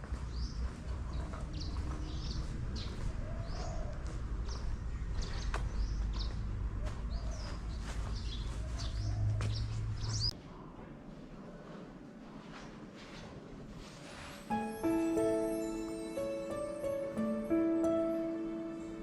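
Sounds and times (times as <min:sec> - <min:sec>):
small birds chirping: 0:00.2 - 0:10.4.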